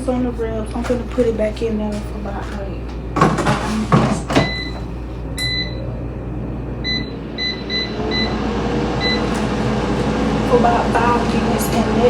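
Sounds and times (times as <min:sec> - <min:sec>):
steady low hum: 0:00.0 - 0:12.0
electronic keypad beeps: 0:05.4 - 0:05.8, 0:06.8 - 0:08.3.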